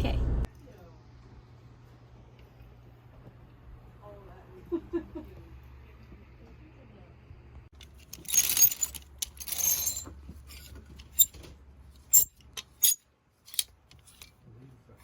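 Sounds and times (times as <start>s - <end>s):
small metal objects jingling: 7.8s - 11.3s, 12.1s - 14.3s.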